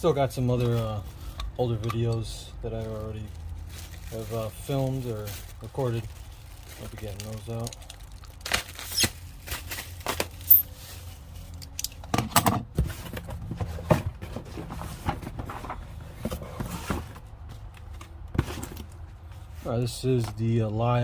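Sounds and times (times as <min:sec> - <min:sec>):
package handling clicks and rattles: 0:06.7 - 0:10.6.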